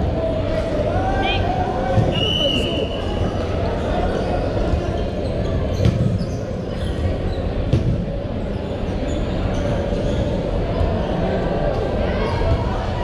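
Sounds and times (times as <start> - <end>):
echoing sports hall din: 0.0 - 13.0
dodgeball impacts: 5.6 - 6.2, 7.6 - 8.3.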